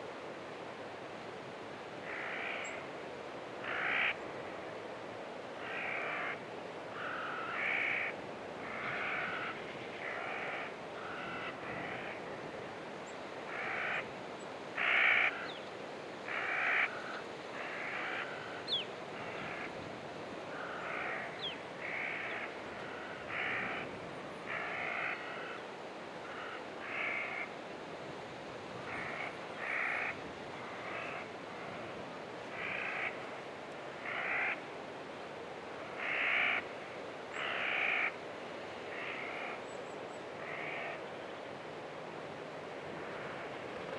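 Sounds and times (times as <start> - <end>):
steady background hiss: 0.0 - 43.9
crows cawing: 2.0 - 2.8, 3.6 - 4.2, 5.6 - 12.2, 13.5 - 14.1, 14.8 - 15.6, 16.3 - 19.7, 20.5 - 23.9, 24.5 - 25.6, 26.2 - 27.6, 28.9 - 31.7, 32.5 - 33.2, 34.0 - 34.6, 35.8 - 36.7, 37.4 - 38.2, 38.9 - 39.6, 40.4 - 41.0.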